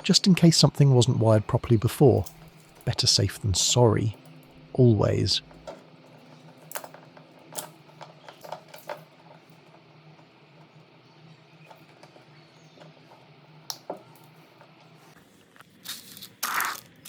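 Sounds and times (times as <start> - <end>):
faint low hum: 0.0 - 15.6
small objects clicking and tapping: 5.4 - 15.0.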